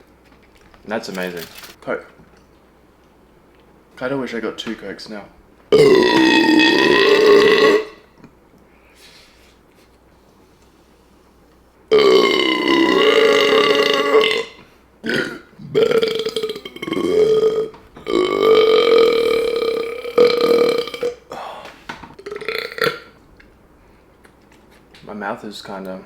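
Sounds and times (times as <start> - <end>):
man burping loudly: 5.7 - 8.0, 11.9 - 21.6, 22.2 - 23.2.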